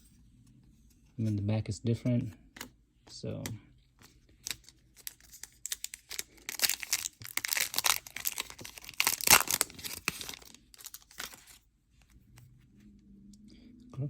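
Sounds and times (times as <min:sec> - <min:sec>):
plastic wrapper crinkling and tearing: 0:04.2 - 0:11.6.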